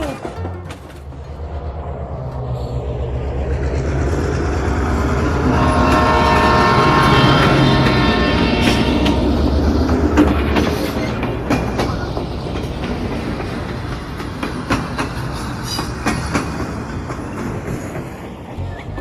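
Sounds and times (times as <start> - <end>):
train rumbling on rails: 0.0 - 19.0
train wheel clicks: 9.9 - 18.2.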